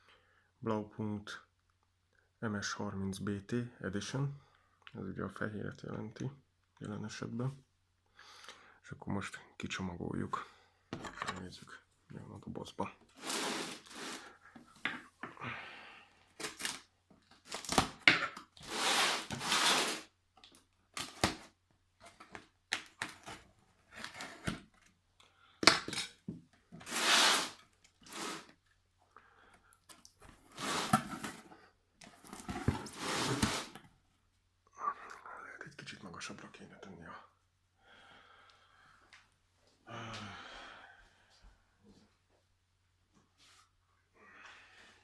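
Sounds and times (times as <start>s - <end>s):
cardboard tearing: 13.1s - 14.3s, 16.4s - 16.8s, 17.4s - 20.1s, 21.0s - 21.5s, 26.8s - 28.5s, 30.5s - 31.4s, 32.2s - 33.8s
packing rustling: 13.1s - 14.3s, 16.4s - 18.0s, 18.6s - 20.1s, 26.8s - 28.5s, 30.4s - 31.5s, 32.1s - 33.8s
scraping: 18.6s - 20.0s, 32.3s - 33.8s.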